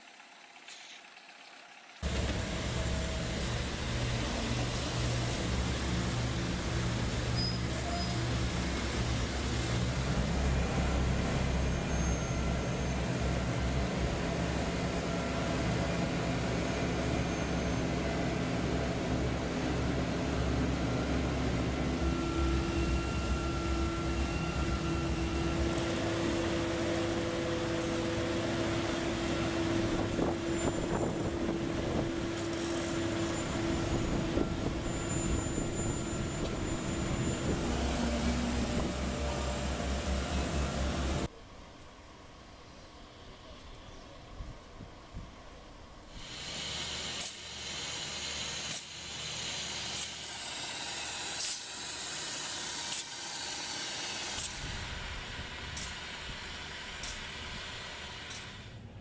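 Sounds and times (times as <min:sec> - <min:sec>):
road machinery engines running: 0:00.0 - 0:59.0
steady whine: 0:19.5 - 0:43.3.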